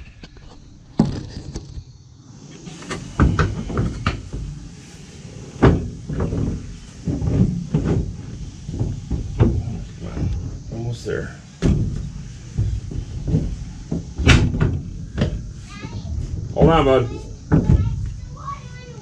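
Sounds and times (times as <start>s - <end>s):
car seat metal clunks and rattles: 11.6s - 18.2s.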